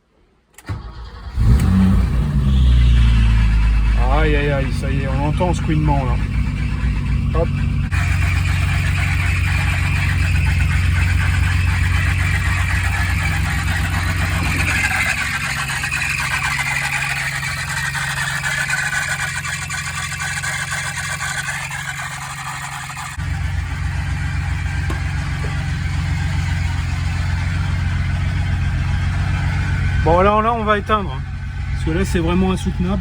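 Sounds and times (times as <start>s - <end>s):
car engine idling: 0.6s - 33.0s
belt squealing: 2.4s - 23.2s.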